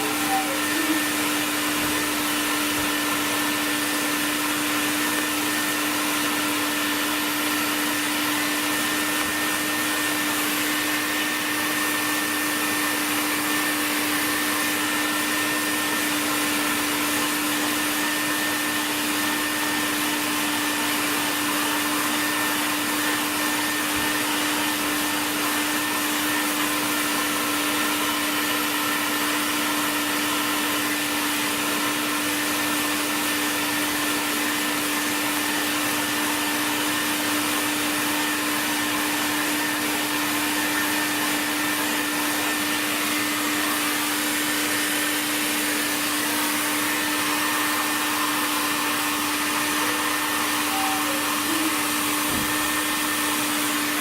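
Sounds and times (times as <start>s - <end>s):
small electric motor humming: 49.8s - 53.6s.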